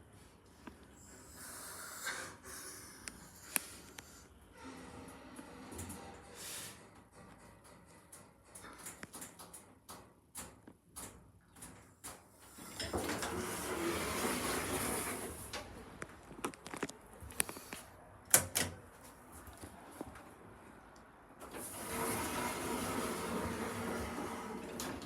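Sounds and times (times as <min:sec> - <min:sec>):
lift sliding doors running: 0:12.7 - 0:15.9, 0:21.4 - 0:25.0.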